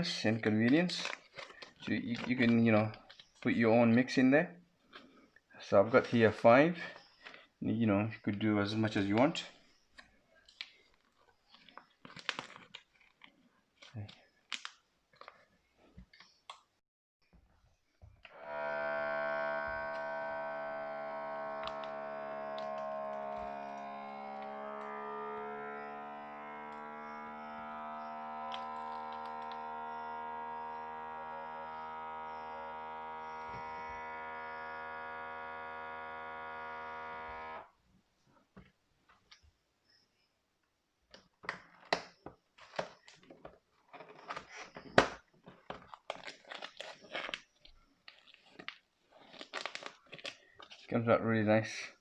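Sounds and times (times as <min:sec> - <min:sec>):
vacuum sealer pump humming: 0:18.2 - 0:37.7.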